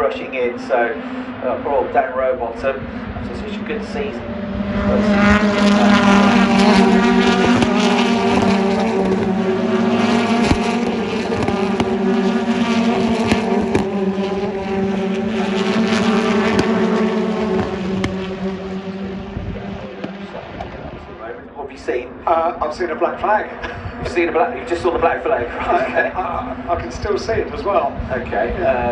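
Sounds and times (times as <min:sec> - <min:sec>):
race cars passing at high revs: 0:00.0 - 0:28.9
engine pops: 0:05.2 - 0:21.0.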